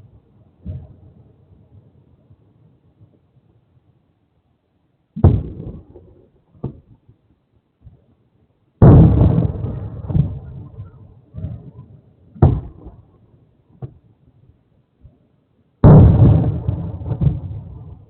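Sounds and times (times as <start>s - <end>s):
firework shells booming: 5.2s - 6.9s, 8.8s - 11.8s, 12.4s - 13.1s, 15.8s - 18.0s.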